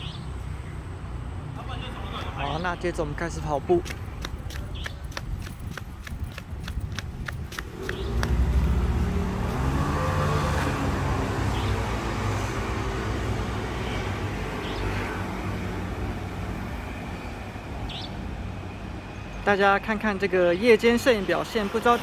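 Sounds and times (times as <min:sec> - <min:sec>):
road traffic rumble: 0:00.0 - 0:22.0
quick footsteps: 0:03.6 - 0:09.7
car engine passing: 0:07.6 - 0:17.0.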